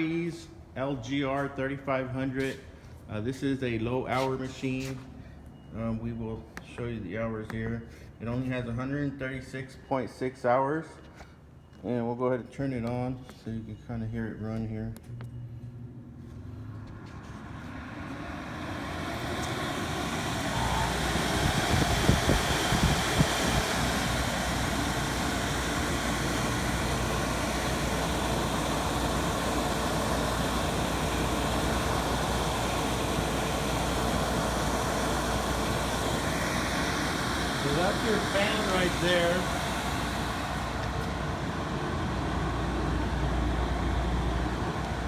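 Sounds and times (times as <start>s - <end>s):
dehumidifier fan rushing: 16.2s - 45.0s
low hum: 16.5s - 45.0s.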